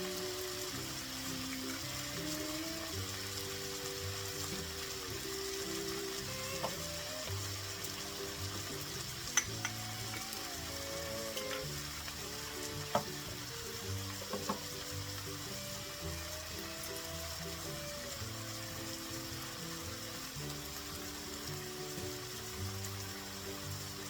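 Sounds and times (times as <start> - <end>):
food sizzling in a pan: 0.0 - 24.0
utensil clicking against pan: 9.1 - 10.5.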